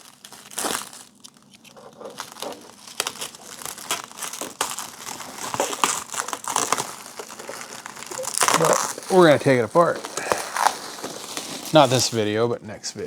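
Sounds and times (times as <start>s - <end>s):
packing material crinkling: 0.0s - 12.4s.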